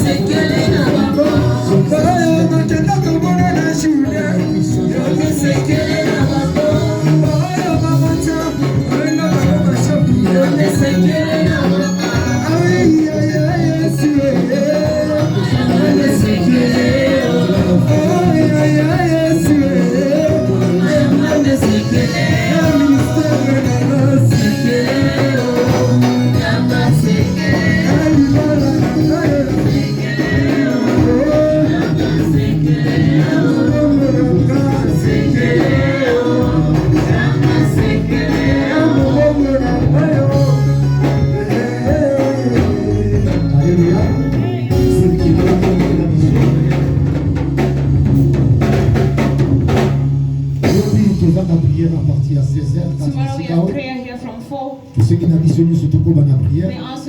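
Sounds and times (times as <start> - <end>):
low bass line: 0.0 - 53.6
worship song singing: 0.0 - 57.0.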